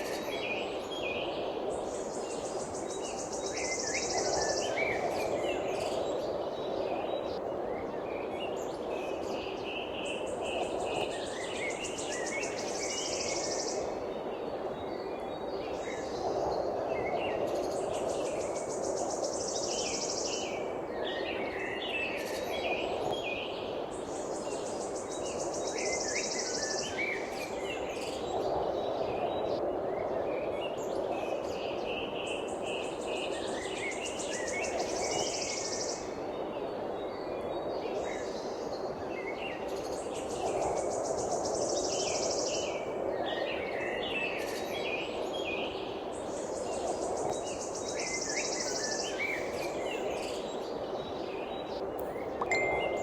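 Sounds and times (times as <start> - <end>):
songbirds chirping: 30.4 - 53.0.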